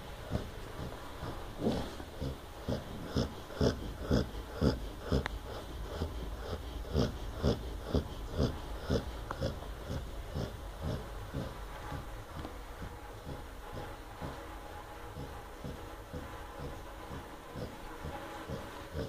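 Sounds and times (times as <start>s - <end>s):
pet snoring in short snorts: 0.3s - 12.0s.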